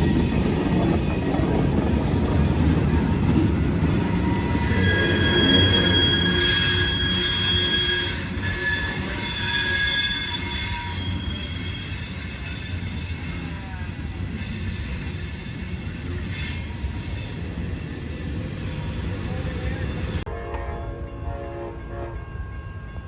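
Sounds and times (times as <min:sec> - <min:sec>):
train wheels squealing: 0:00.0 - 0:20.3
rumble of rolling railcars: 0:00.0 - 0:23.0.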